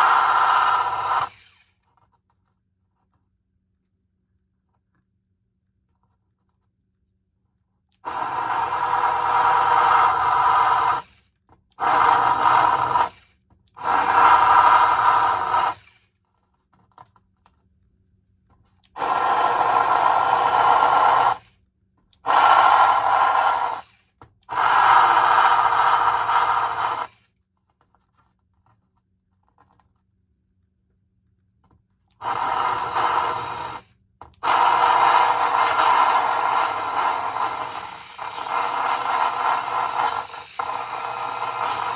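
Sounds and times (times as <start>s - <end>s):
power sander grinding plastic: 0.0s - 1.7s, 8.0s - 11.2s, 11.8s - 13.2s, 13.8s - 16.0s, 19.0s - 21.5s, 22.2s - 27.2s, 32.2s - 41.9s.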